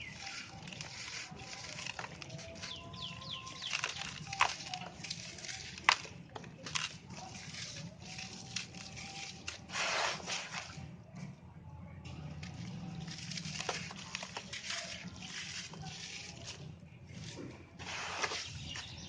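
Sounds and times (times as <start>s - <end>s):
sand-cement chunks crunching: 0.0s - 10.9s, 12.2s - 19.0s.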